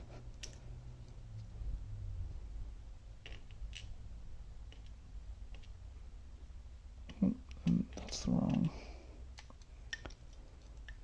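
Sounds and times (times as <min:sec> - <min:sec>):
low handling rumble: 0:00.7 - 0:03.3.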